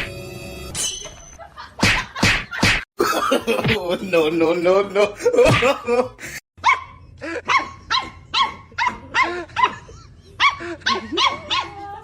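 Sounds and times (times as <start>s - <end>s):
dog barking: 6.6s - 11.9s.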